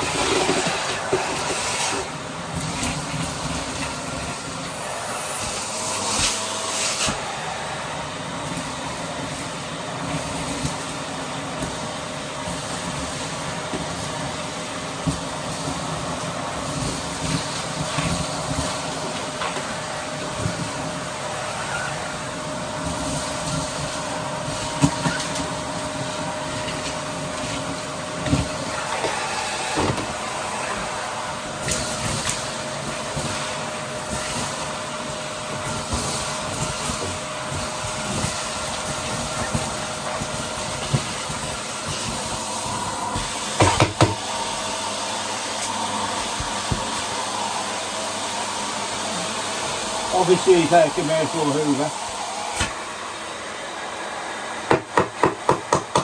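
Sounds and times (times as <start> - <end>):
vacuum cleaner running: 0.0 - 56.0
vacuum clicks and knocks: 54.7 - 56.0.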